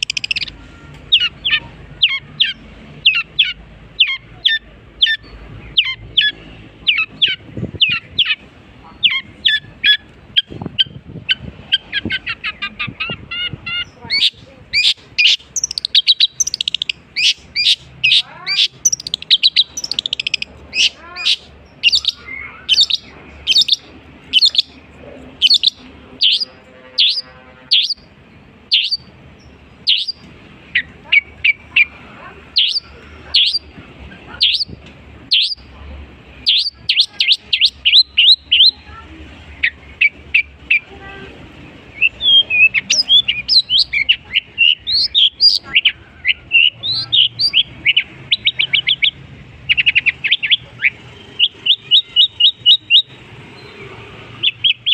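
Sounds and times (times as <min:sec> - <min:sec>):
bird singing sharp high chirps: 0:00.0 - 0:08.4, 0:13.8 - 0:24.8, 0:25.4 - 0:28.1, 0:28.7 - 0:31.7, 0:32.6 - 0:33.7, 0:34.4 - 0:35.7, 0:36.4 - 0:38.8, 0:41.9 - 0:54.9.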